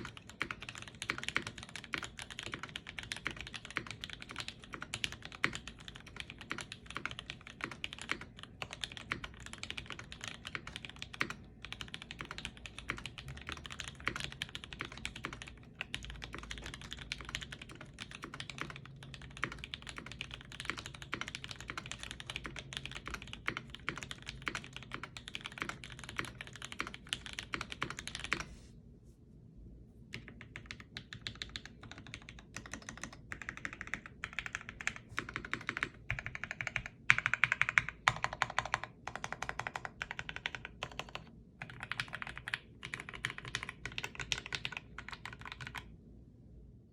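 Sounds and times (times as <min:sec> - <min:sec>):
fast typing on mechanical keyboard: 0:00.0 - 0:28.5, 0:30.1 - 0:45.9.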